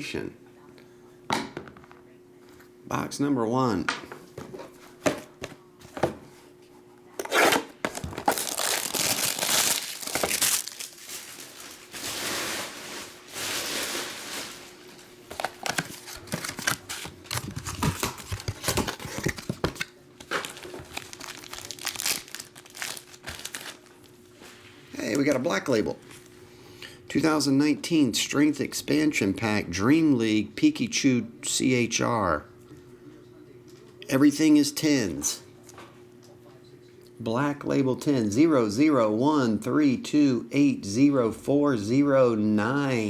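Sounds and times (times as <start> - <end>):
packaging tearing: 7.3 - 19.5, 20.3 - 23.9
packaging crinkling: 7.8 - 19.6, 20.2 - 24.1.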